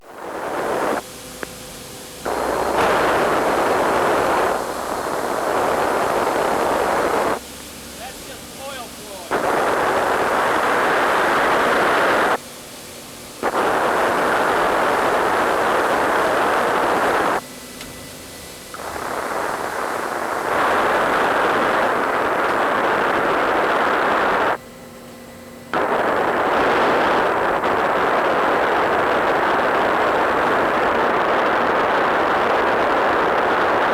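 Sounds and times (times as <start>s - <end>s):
rushing hiss of valve flow: 2.2s - 7.4s.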